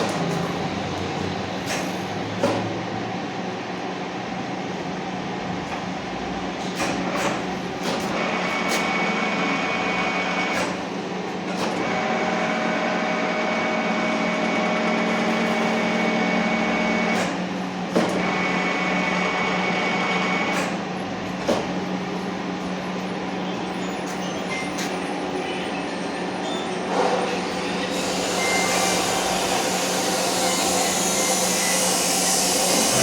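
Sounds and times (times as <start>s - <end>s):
machine whine: 22.2s - 33.0s
milling machine gear hum: 27.4s - 33.0s.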